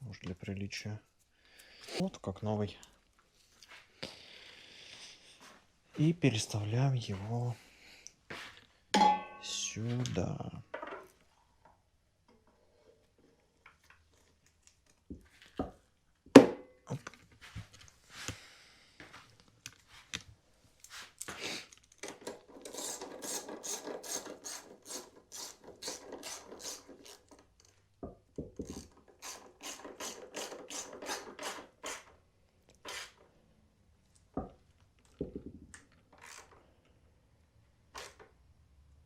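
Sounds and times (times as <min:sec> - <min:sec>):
tools and parts knocking: 0:09.0 - 0:09.4, 0:10.7 - 0:11.2, 0:15.1 - 0:16.7, 0:22.0 - 0:32.1, 0:34.4 - 0:36.6
ratchet wrench clicking: 0:22.7 - 0:27.3, 0:28.6 - 0:32.1, 0:36.2 - 0:36.5.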